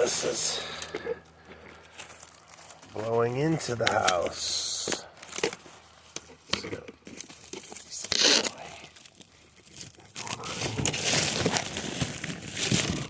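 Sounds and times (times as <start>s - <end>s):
material crinkling and rustling: 0.0s - 13.0s.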